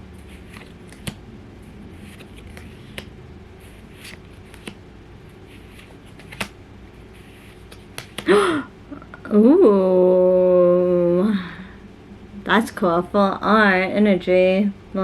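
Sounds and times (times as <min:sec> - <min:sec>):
trading cards rustling and sliding: 0:00.1 - 0:08.4
card snaps: 0:00.5 - 0:01.2, 0:05.8 - 0:06.6, 0:07.6 - 0:08.3.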